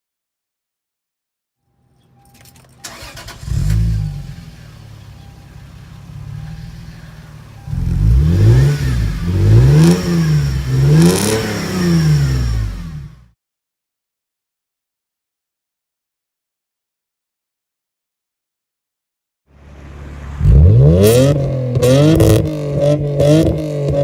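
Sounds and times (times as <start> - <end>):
car engine starting and revving: 2.4 - 13.4, 19.5 - 24.0.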